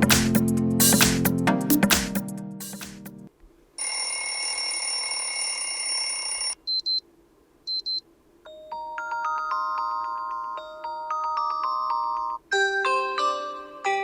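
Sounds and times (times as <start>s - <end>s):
electronic ringing tone: 3.8s - 6.6s, 8.6s - 12.4s
chiming bell-like melody: 8.5s - 14.0s.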